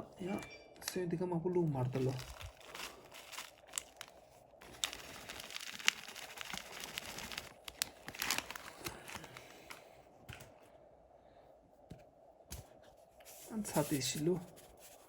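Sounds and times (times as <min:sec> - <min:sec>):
crinkling and rustling: 0:00.8 - 0:10.7.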